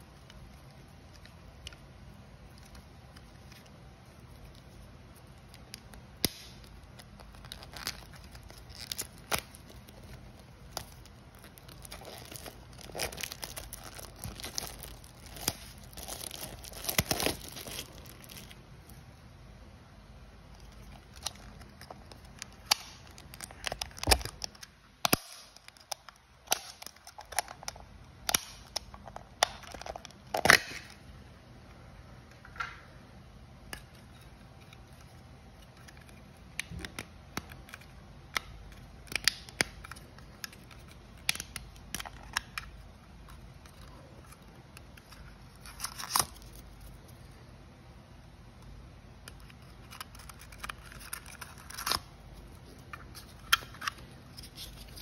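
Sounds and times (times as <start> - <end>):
crinkles: 0.0 - 19.1, 20.5 - 31.0, 33.7 - 47.5, 48.6 - 55.0.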